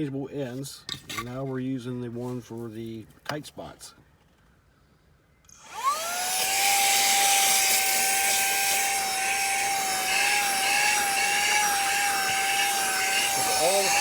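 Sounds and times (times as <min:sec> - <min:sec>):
handheld vacuum motor whine: 0:05.5 - 0:14.0.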